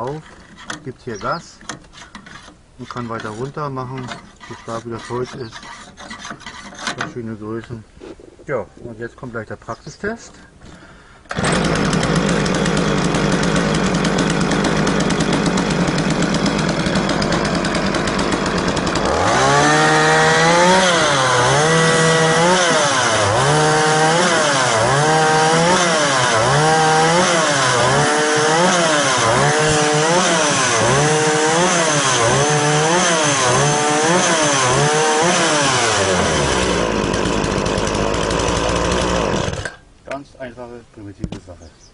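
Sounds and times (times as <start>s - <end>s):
chainsaw idling and revving: 11.3s - 39.8s.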